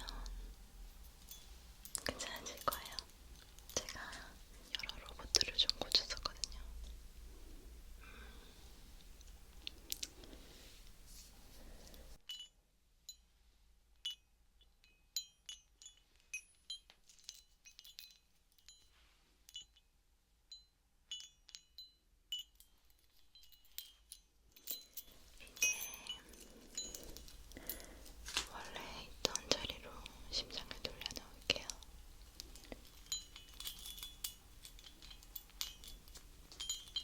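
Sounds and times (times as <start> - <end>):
soft hiss: 0.0 - 37.0
small objects clinking: 20.5 - 29.8, 30.6 - 37.0.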